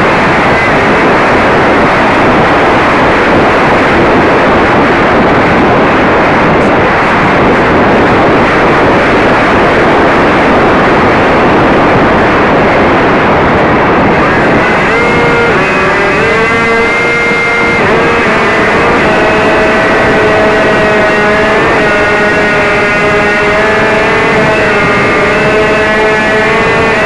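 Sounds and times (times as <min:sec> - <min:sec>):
wind rushing: 0:00.0 - 0:27.0
model airplane motor: 0:14.1 - 0:27.0.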